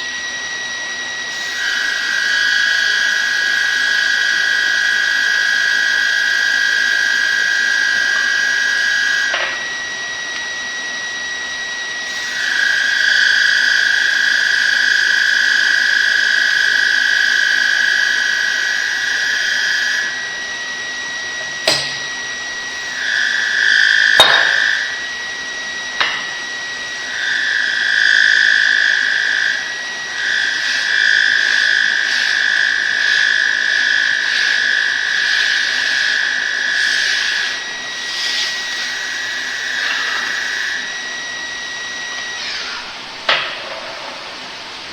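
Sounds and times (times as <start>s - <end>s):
high-pitched mechanical whine: 0.0s - 44.9s
steady high tone: 21.4s - 25.3s.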